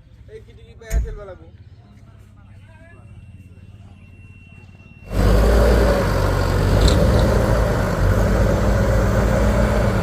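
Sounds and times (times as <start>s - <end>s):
heavy machine engine running: 5.0s - 10.0s.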